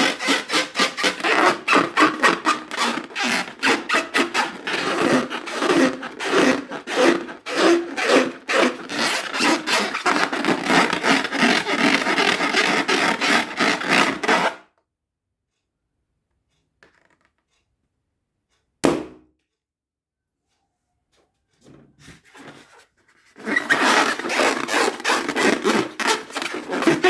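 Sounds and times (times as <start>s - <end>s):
balloons rubbed and squeaking: 0.0s - 14.6s, 22.0s - 27.0s.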